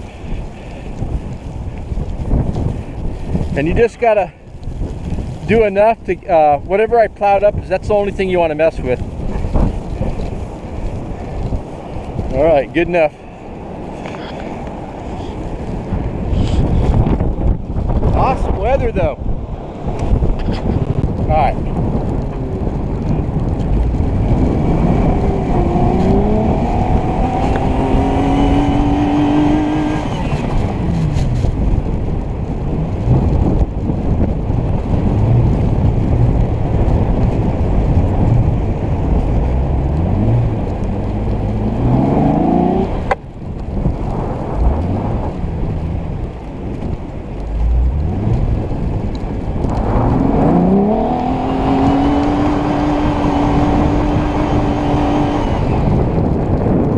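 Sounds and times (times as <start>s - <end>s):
heavy rushing noise: 0.0s - 56.9s
engine revving: 23.8s - 31.5s, 38.2s - 43.2s, 49.6s - 56.0s.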